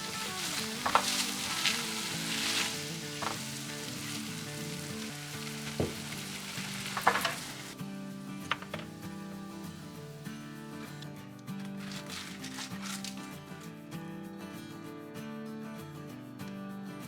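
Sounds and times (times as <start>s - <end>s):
utensil clicking against pan: 0.0s - 7.8s
potatoes sizzling in oil: 0.0s - 13.5s.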